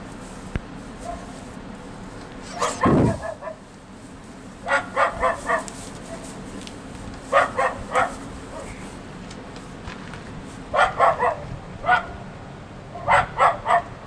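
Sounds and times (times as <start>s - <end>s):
dog barking: 1.0s - 1.3s, 2.5s - 3.6s, 4.6s - 6.2s, 7.3s - 8.8s, 10.7s - 12.2s, 12.9s - 14.0s
loud low thump: 2.5s - 3.4s.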